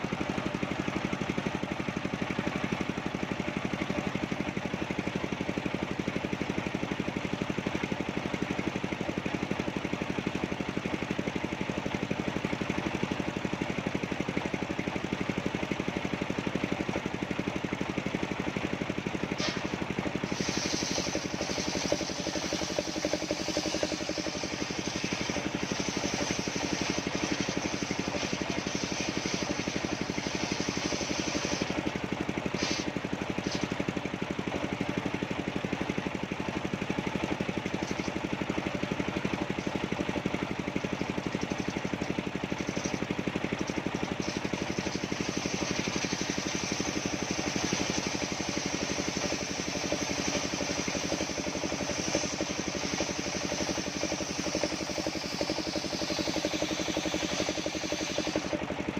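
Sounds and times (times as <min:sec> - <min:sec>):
sawmill engine running: 0:00.0 - 0:58.9
saw blade cutting wood hiss: 0:19.3 - 0:33.8, 0:44.2 - 0:58.6.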